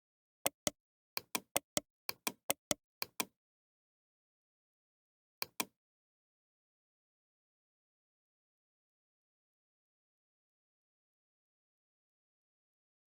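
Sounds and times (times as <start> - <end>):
sharp taps: 0.5 - 3.2.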